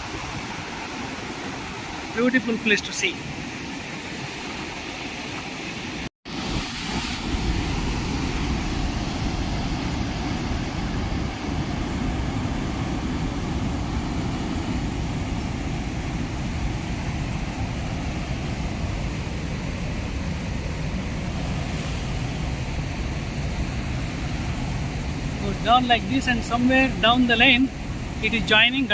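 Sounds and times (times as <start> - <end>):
wind on microphone: 3.2 - 26.4
waterfall roaring: 6.3 - 28.9.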